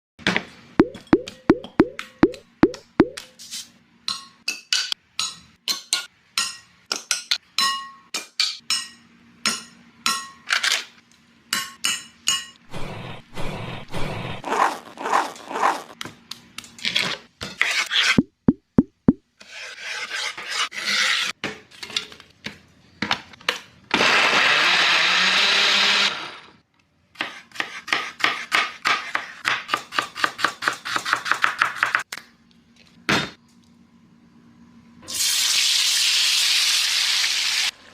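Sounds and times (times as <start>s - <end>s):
knocks and scraping strokes: 12.7s - 16.0s, 17.6s - 21.3s.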